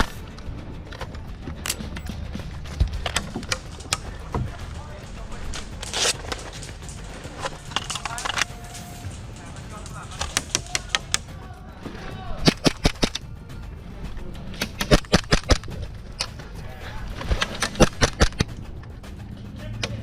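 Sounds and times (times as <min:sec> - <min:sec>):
airsoft guns firing: 0:02.7 - 0:11.4, 0:12.4 - 0:13.2, 0:17.2 - 0:18.6.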